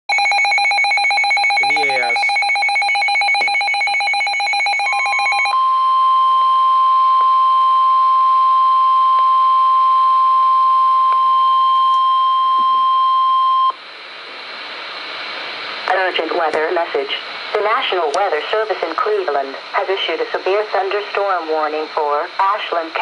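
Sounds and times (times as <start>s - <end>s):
pulsing electronic alarm beeps: 0.1s - 13.8s
steady alarm tone: 0.1s - 13.8s.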